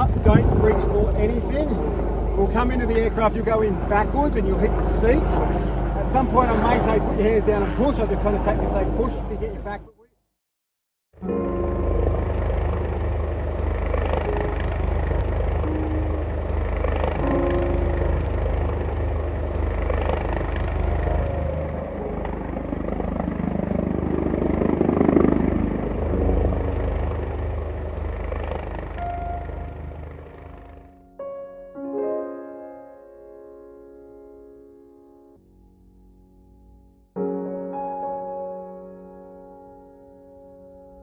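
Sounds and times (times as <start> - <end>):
helicopter rotor and engine: 0.0 - 9.9, 11.4 - 31.0.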